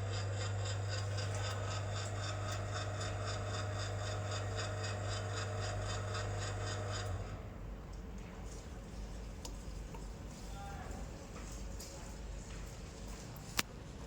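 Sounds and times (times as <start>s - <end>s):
motor humming: 0.0s - 7.6s.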